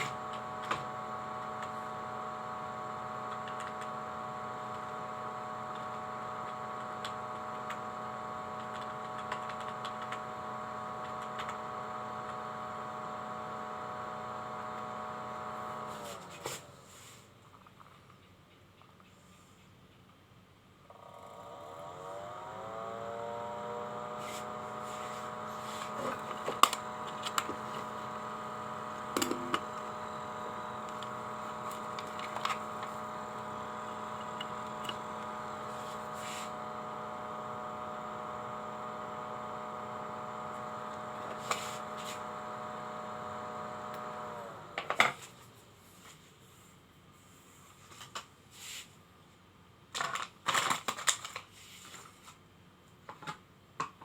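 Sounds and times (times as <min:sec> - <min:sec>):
small electric motor whining: 0:00.0 - 0:16.8, 0:20.9 - 0:45.4.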